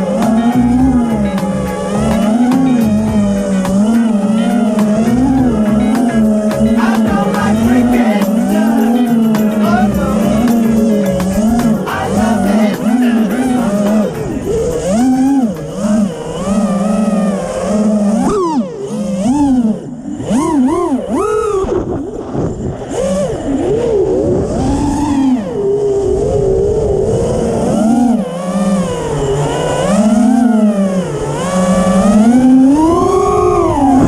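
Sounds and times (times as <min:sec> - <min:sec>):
low rumble: 0:00.0 - 0:17.8
drone motors whining: 0:00.0 - 0:34.0.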